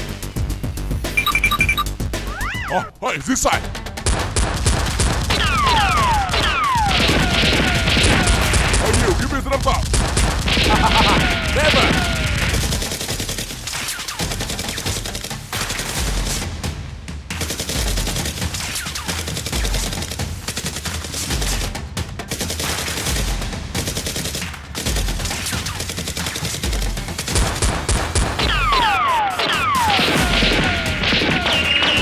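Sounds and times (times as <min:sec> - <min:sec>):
music with deep beat: 0:00.0 - 0:32.0
automatic gunfire: 0:04.1 - 0:14.8, 0:25.0 - 0:32.0
falling whistling tones: 0:28.5 - 0:32.0.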